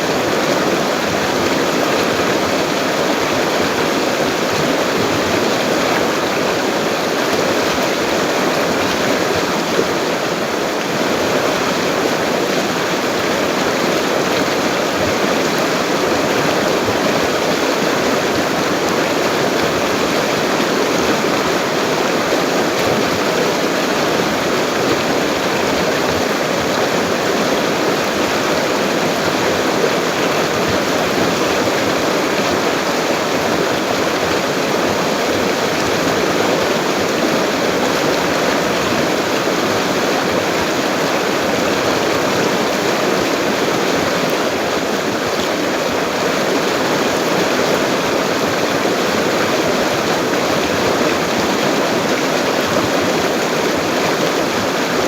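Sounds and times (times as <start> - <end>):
river rushing: 0.0 - 55.0.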